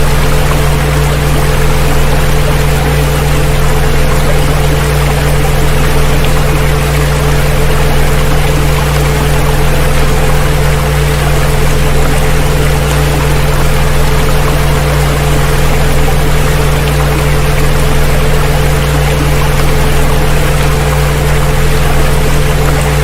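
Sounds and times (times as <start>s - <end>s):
water rushing: 0.0s - 23.0s.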